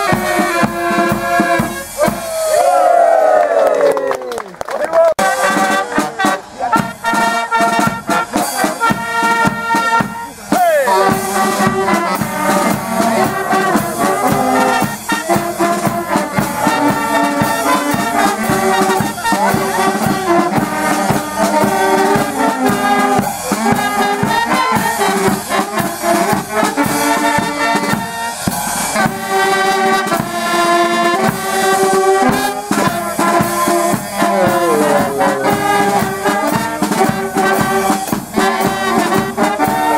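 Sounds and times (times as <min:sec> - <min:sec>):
brass band playing: 0:00.0 - 0:03.0, 0:05.2 - 0:39.9.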